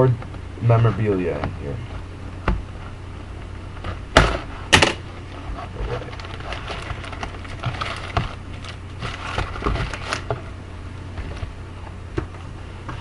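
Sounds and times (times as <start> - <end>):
low steady hum: 0.0 - 13.0
cardboard box and foil rustling: 5.4 - 10.3.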